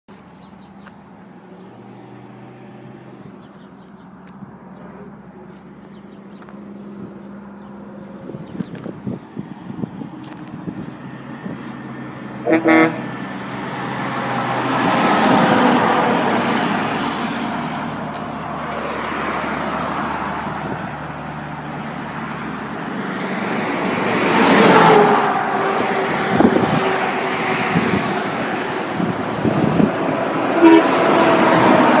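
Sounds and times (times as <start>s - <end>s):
road traffic passing: 0.1s - 32.0s
truck horn toot: 12.4s - 13.2s, 30.5s - 32.0s.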